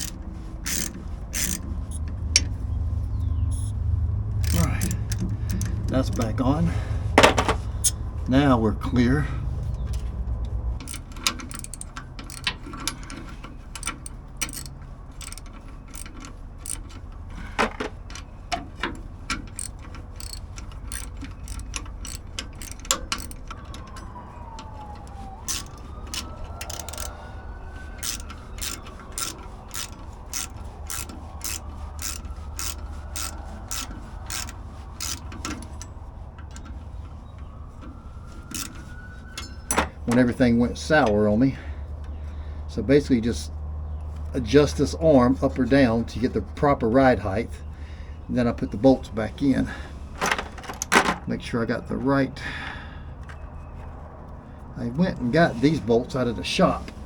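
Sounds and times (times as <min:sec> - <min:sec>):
ratchet wrench clicking: 0:00.0 - 0:02.6, 0:03.5 - 0:03.8, 0:04.4 - 0:06.4, 0:07.2 - 0:08.0, 0:10.8 - 0:17.0, 0:19.4 - 0:23.6, 0:25.5 - 0:27.1, 0:28.0 - 0:35.9, 0:38.5 - 0:39.8
low hum: 0:00.0 - 0:17.1.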